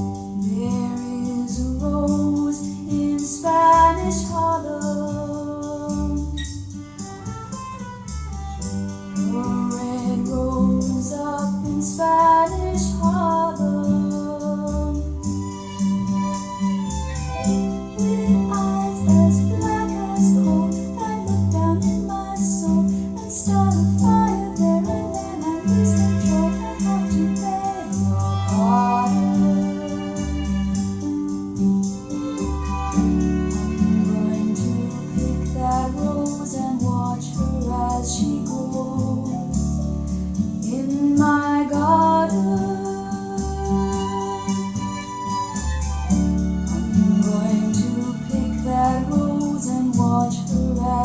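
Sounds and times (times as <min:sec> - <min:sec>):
cymbal ticks: 0:00.0 - 0:51.0
recorded song through loudspeakers: 0:33.4 - 0:39.6.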